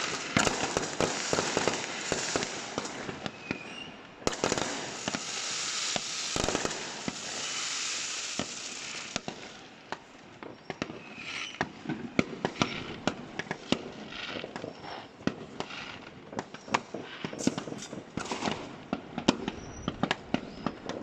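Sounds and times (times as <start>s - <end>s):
fireworks banging: 0.0s - 21.0s
fireworks crackling: 0.0s - 21.0s.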